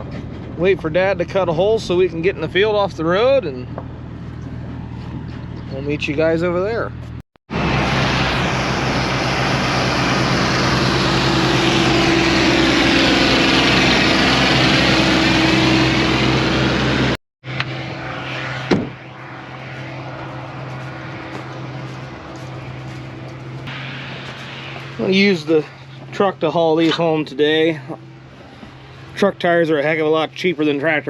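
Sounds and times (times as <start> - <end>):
tractor engine running: 0.0 - 31.0
engine idling: 8.2 - 17.2.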